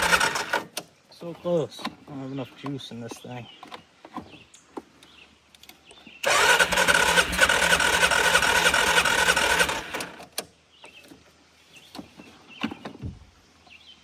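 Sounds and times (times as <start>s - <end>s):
engine cranking by starter: 0.0s - 0.9s, 6.2s - 10.5s.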